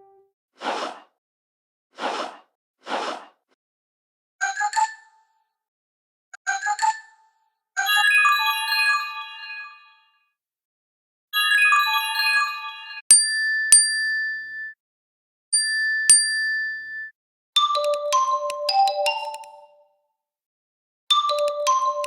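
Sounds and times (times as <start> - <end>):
bright chime: 11.4 - 14.8, 15.6 - 17.1
sharp pings: 13.1 - 14.8, 15.6 - 17.1.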